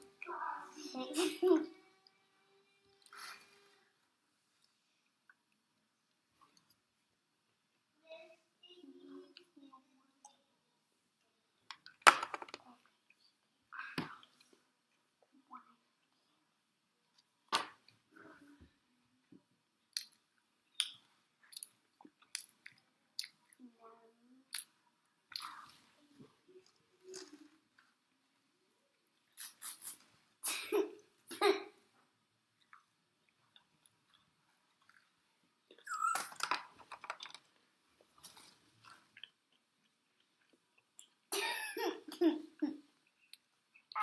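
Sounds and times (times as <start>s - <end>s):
chewing food with mouth clicks: 19.9s - 23.6s, 38.2s - 41.3s, 43.0s - 44.0s.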